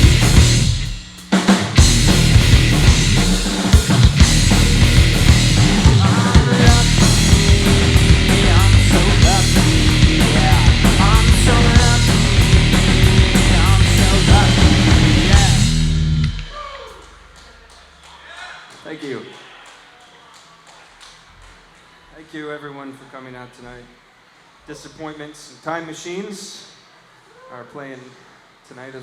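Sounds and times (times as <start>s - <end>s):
electric guitar bending notes: 0.0s - 1.0s, 1.7s - 16.6s
live rock trio playing: 0.0s - 16.5s.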